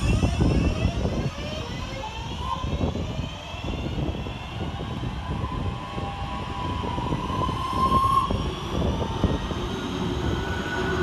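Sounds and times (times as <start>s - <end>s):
train rumble: 0.0s - 11.0s.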